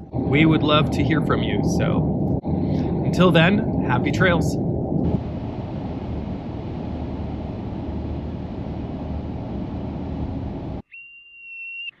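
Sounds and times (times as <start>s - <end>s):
steady rumbling noise: 0.0s - 10.8s
high whistle tone: 10.8s - 12.0s.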